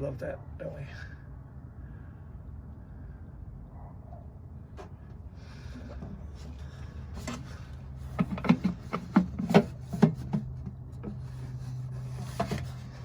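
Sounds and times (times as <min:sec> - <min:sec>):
drain pan scraping and knocking: 0:05.8 - 0:13.0.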